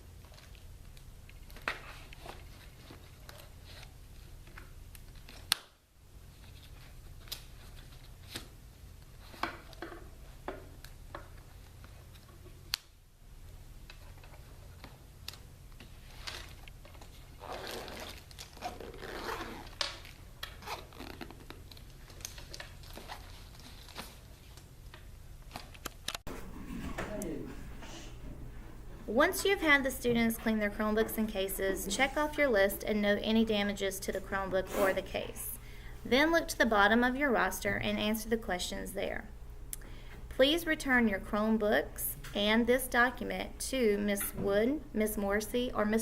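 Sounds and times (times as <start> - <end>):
steady low hum: 10.0 - 46.0.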